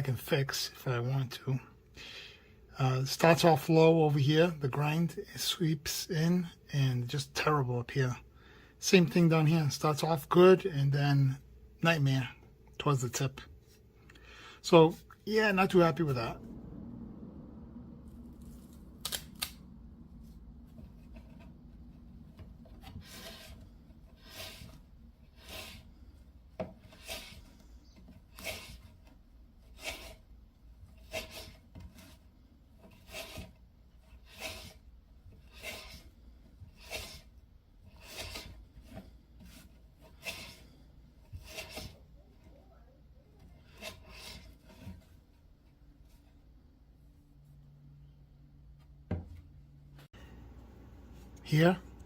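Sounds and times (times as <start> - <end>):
metal tool rubbing and scraping: 20.7 - 26.0, 26.8 - 30.3, 32.8 - 42.6.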